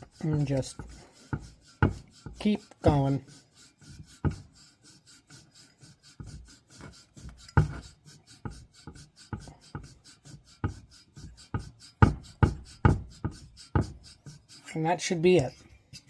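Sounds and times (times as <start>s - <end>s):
valve lapping rasping strokes: 0.0s - 16.0s.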